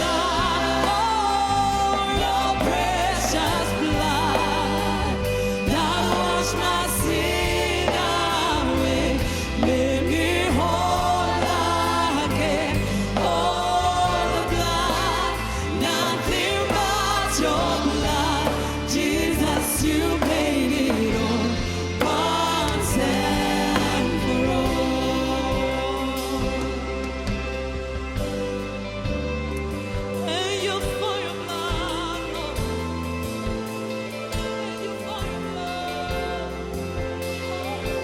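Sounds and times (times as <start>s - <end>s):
choir singing: 0.0s - 38.0s
gospel band playing: 0.0s - 38.0s.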